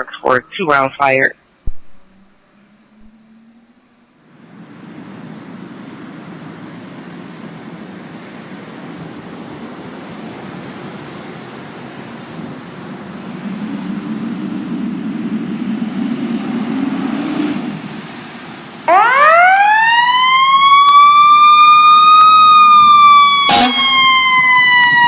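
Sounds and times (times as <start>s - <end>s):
fire truck engine running: 18.2s - 25.0s.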